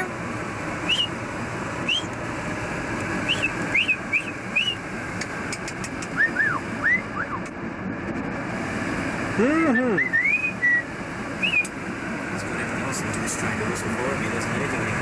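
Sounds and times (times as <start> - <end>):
steady background hum: 0.0 - 15.0
budgerigar chirping: 3.3 - 4.8.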